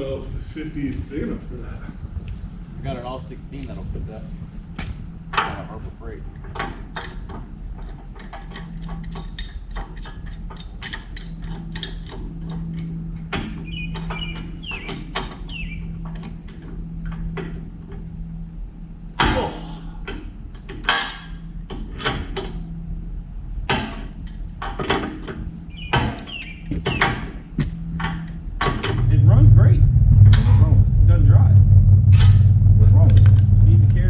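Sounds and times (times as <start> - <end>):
steady low hum: 0.0 - 34.0
metal knocks and clanks: 23.7 - 34.0
loud metal bangs: 28.7 - 34.0.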